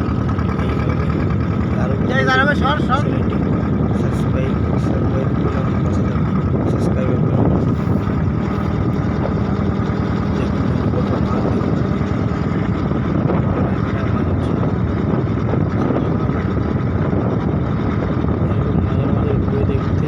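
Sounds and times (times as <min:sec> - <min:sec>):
small engine running: 0:00.0 - 0:20.0.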